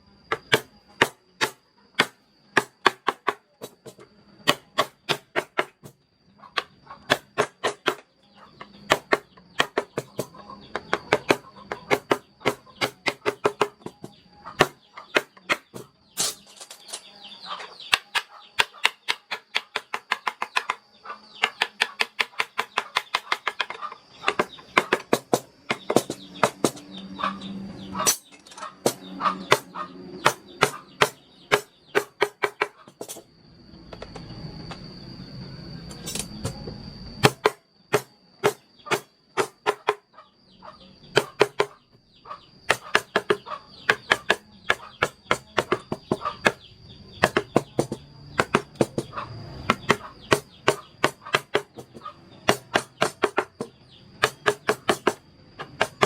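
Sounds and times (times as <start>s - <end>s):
mallet striking chisel: 0.3s - 5.9s, 6.6s - 8.0s, 8.6s - 14.0s, 21.4s - 26.9s, 28.0s - 33.2s, 37.2s - 40.0s, 41.1s - 41.8s, 42.7s - 46.6s, 47.2s - 49.1s, 49.7s - 56.0s
thin steady high tone: 32.7s - 38.4s.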